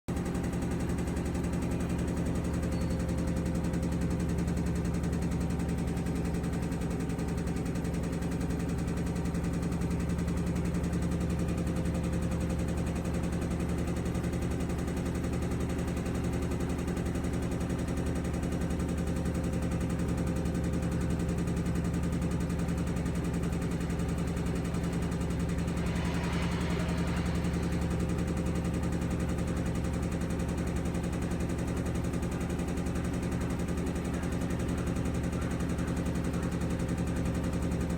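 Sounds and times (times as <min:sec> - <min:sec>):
washing machine spinning: 0:00.1 - 0:37.9
hiss: 0:24.1 - 0:30.1.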